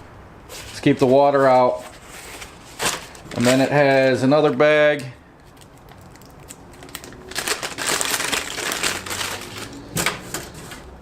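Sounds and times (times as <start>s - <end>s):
plastic bag crinkling: 1.6s - 4.7s, 5.4s - 10.9s.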